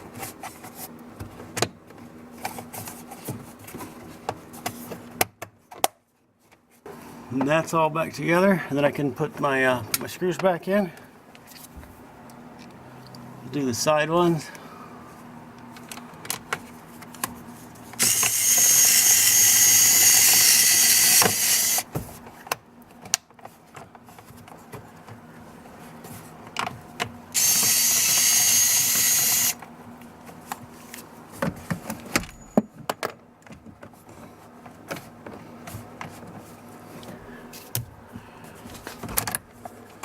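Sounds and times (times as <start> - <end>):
cordless drill running: 18.0 - 21.9, 27.4 - 29.6.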